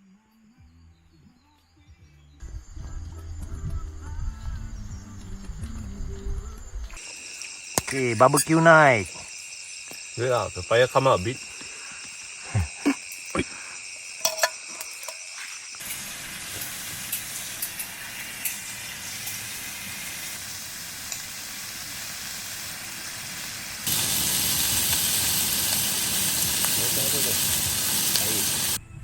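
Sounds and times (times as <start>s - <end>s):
insects ringing: 2.5s - 28.8s
fire crackles and pops: 7.0s - 28.8s
wood fire hissing: 7.0s - 28.8s.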